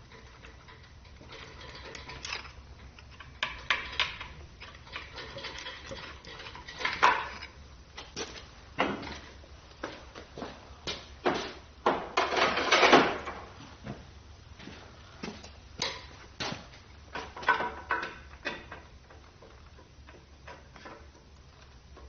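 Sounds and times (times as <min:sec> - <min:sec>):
scraping clatter: 0:00.0 - 0:09.4.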